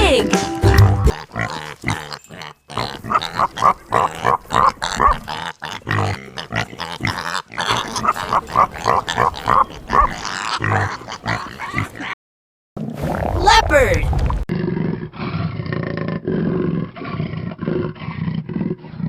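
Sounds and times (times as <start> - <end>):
pig grunting: 0.6 - 12.2.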